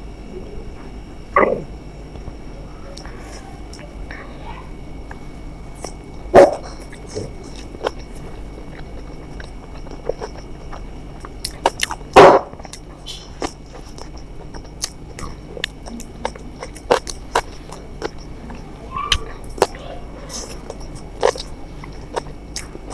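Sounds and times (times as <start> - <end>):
chewing clicks and smacks: 5.8 - 22.9.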